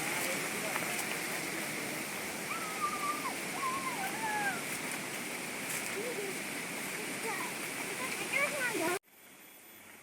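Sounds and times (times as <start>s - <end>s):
stream water rushing: 0.0s - 9.3s
thin wavering whistle-like calls: 2.0s - 5.0s.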